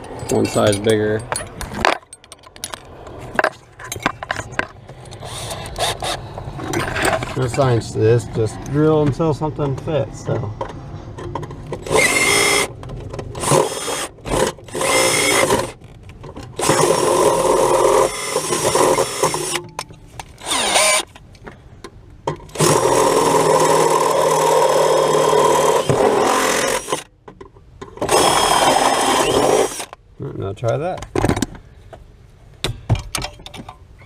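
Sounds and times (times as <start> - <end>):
power drill with hole saw: 5.2 - 6.2, 11.8 - 12.7, 13.4 - 15.8, 16.6 - 19.6, 20.4 - 21.1, 22.5 - 27.1, 28.0 - 30.0.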